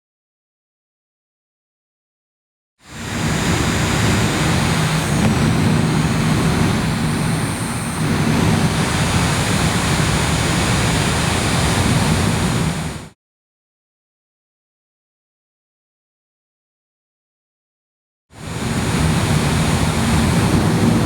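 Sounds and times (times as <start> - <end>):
air conditioner fan running: 2.9 - 13.0.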